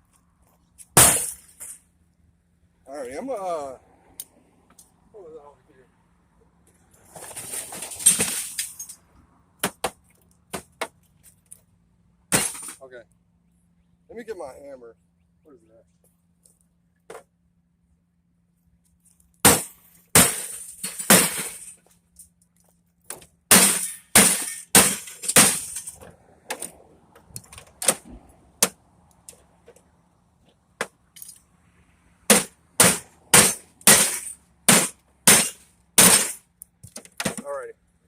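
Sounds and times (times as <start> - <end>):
glass cracking and breaking: 7.7 - 9.0
hammer striking glass: 19.5 - 21.7, 23.5 - 25.9, 32.3 - 36.4.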